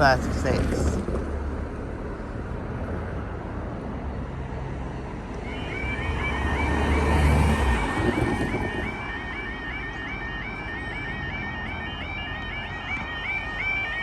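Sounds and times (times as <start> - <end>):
road vehicle engine rumble: 0.0 - 14.0
level crossing warbling alarm: 5.4 - 14.0.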